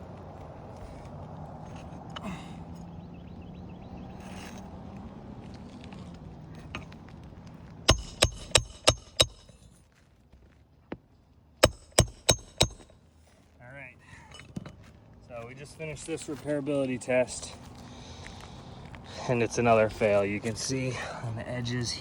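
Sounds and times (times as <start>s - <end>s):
hammer striking roofing nails: 7.9s - 9.6s, 11.6s - 12.9s.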